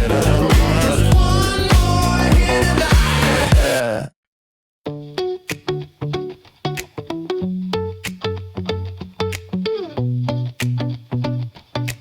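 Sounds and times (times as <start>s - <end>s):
bass notes: 0.0s - 3.8s
steady drum beat: 0.0s - 3.8s
plucked guitar: 4.9s - 12.0s.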